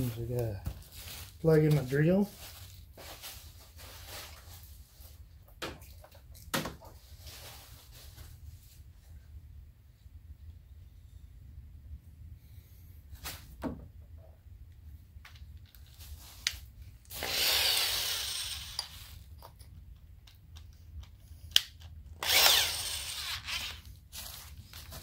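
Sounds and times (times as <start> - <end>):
electric drill running: 17.1 - 19.0, 22.2 - 23.8.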